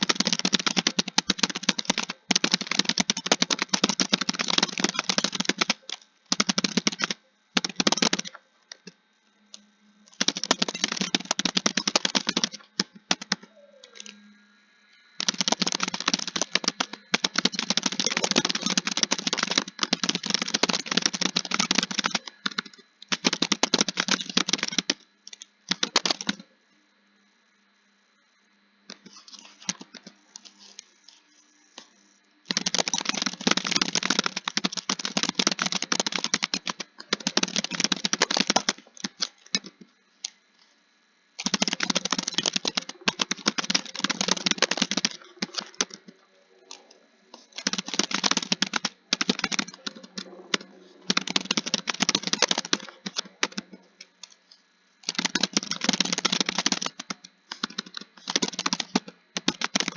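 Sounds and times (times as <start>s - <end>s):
fast typing on keyboard: 0.0s - 8.9s, 10.1s - 14.1s, 15.2s - 26.4s, 32.5s - 40.4s, 41.4s - 54.4s, 55.0s - 59.9s.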